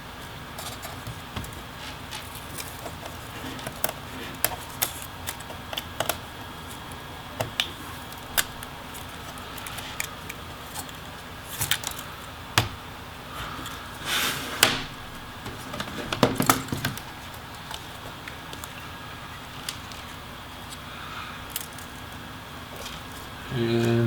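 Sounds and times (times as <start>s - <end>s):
scraping rustle: 0.5s - 5.8s.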